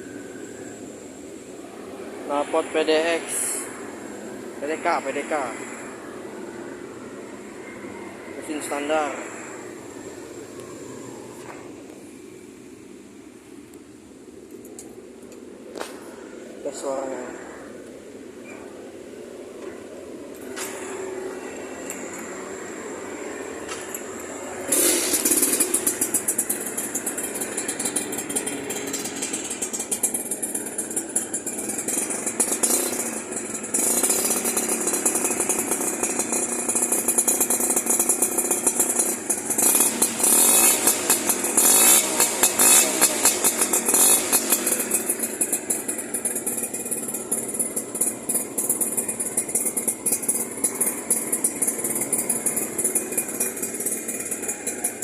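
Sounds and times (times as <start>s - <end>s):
two-stroke motorcycle engine revving: 0.0s - 6.0s, 19.8s - 55.0s.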